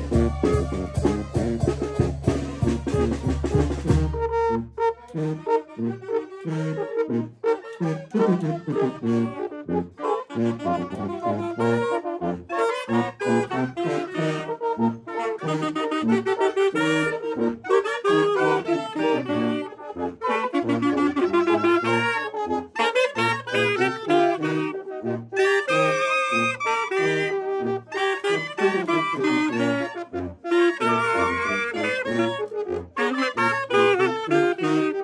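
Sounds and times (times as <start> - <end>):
low rhythmic bass notes: 0.0 - 7.4
wind band playing: 0.0 - 35.0.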